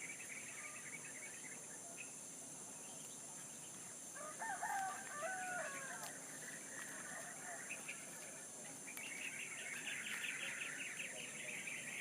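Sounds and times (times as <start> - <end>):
rooster crowing: 4.2 - 7.8.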